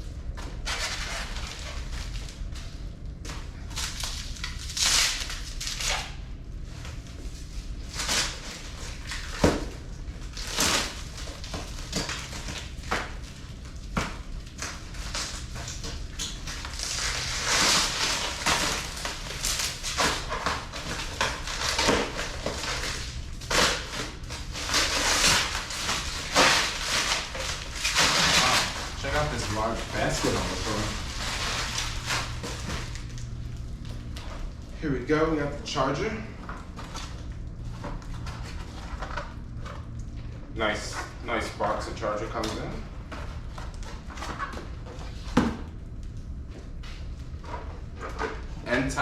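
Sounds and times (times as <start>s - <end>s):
plastic packaging crinkling: 0.6s - 34.8s.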